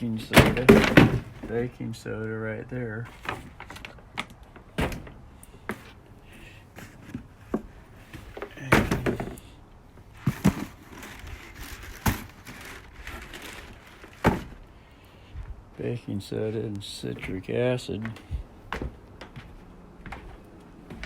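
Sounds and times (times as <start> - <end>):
clatter of objects: 0.3 - 1.6, 6.8 - 9.5, 10.2 - 14.6.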